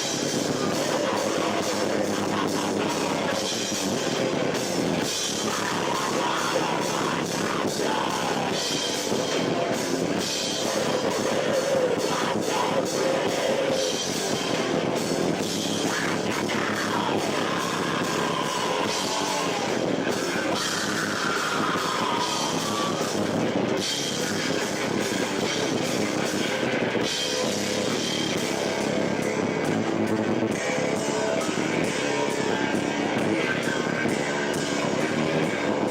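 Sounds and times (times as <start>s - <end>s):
drum kit: 0.0s - 35.9s
electric guitar with sliding notes: 0.0s - 35.9s.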